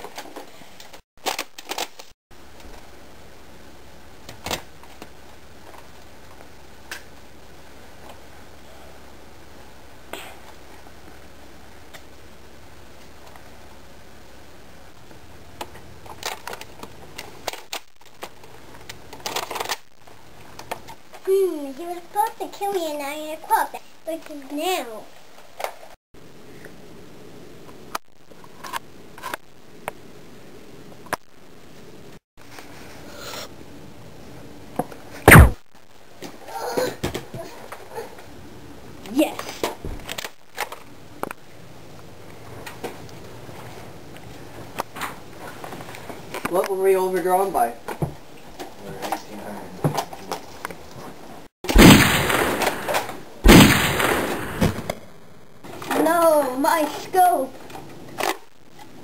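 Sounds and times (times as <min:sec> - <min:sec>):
loud booms: 0:35.3 - 0:35.6, 0:51.7 - 0:55.0.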